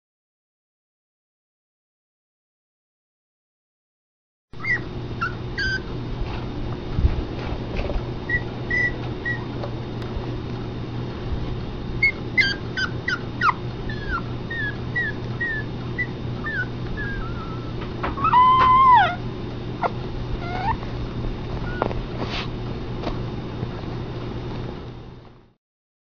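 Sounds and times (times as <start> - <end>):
puppy whimpering: 4.6 - 6.0, 8.3 - 9.7, 12.0 - 22.0.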